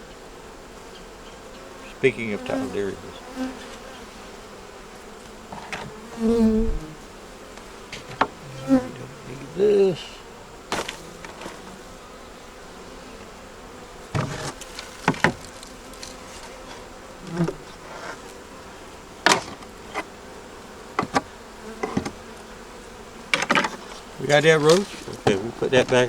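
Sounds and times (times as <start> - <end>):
bees buzzing: 0.0 - 26.0
knocks of hive parts: 5.5 - 6.8, 7.5 - 8.9, 10.7 - 11.7, 14.1 - 18.2, 19.2 - 20.1, 20.9 - 22.3, 23.2 - 26.0.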